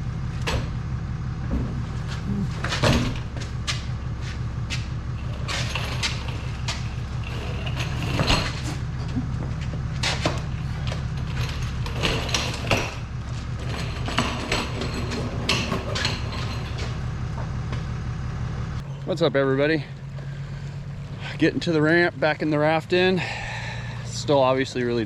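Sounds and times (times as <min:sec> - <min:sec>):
vehicle engine running: 0:00.0 - 0:25.0
knocks clicks and clunks: 0:00.3 - 0:00.8, 0:01.4 - 0:04.1, 0:04.7 - 0:19.2.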